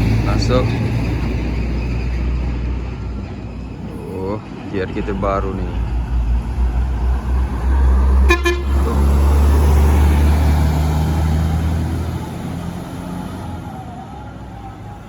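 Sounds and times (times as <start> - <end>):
bus diesel engine passing: 0.0 - 15.0
short horn toot: 8.2 - 9.0.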